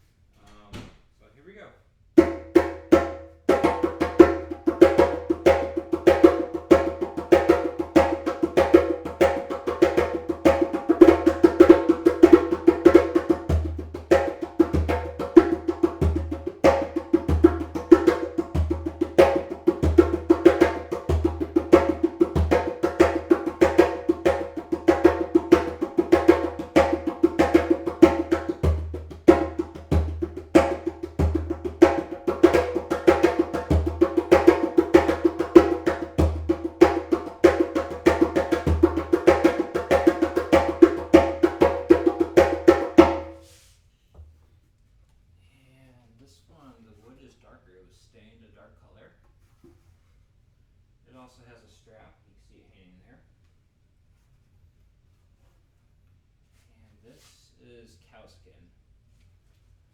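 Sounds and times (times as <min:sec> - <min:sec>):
djembe drumming by hand: 0:02.2 - 0:43.4.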